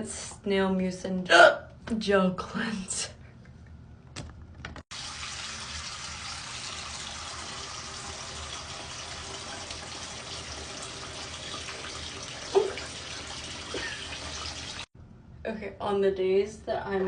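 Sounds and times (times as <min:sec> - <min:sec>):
tap water running: 0:04.9 - 0:14.9.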